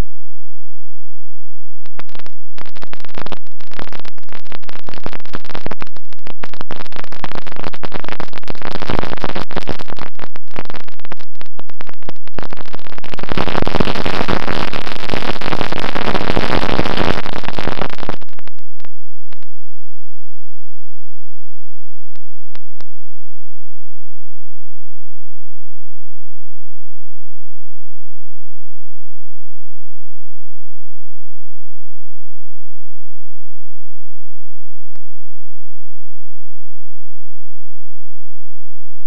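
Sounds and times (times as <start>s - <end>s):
hissing crackling static: 1.8s - 19.6s, 22.5s - 22.9s.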